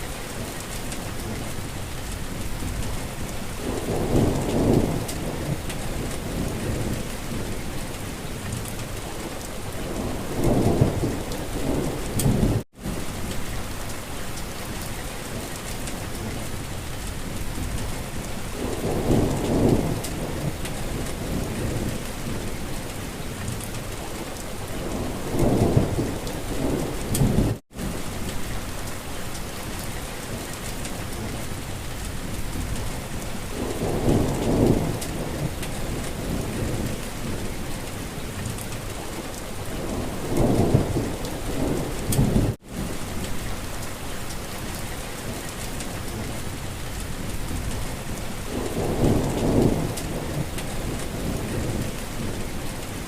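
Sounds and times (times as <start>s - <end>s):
steady rain falling: 0.0s - 53.0s.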